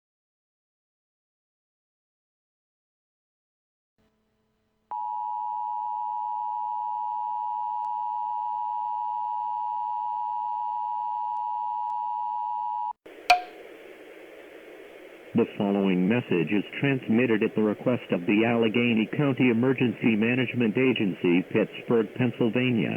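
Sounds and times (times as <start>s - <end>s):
low hiss: 13.1s - 22.9s
sharp click: 13.3s - 13.6s.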